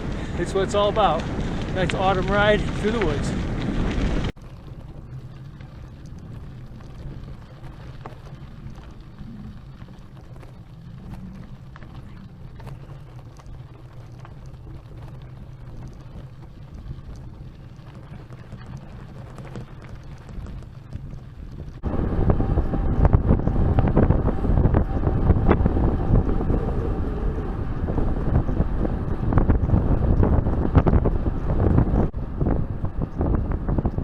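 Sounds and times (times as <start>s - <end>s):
bicycle tyres rumbling on gravel: 0.0s - 34.0s
stones clicking and rattling: 1.0s - 21.8s.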